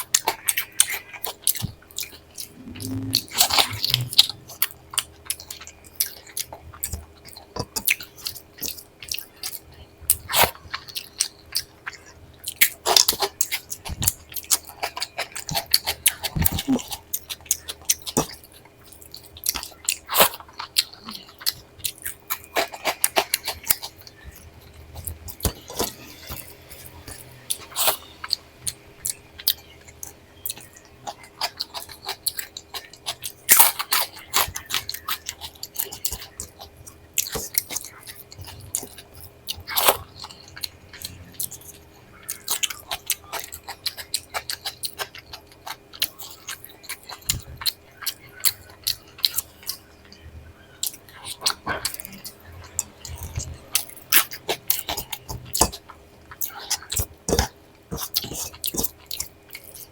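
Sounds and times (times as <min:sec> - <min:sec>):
person chewing crisp food: 0:00.0 - 0:59.9.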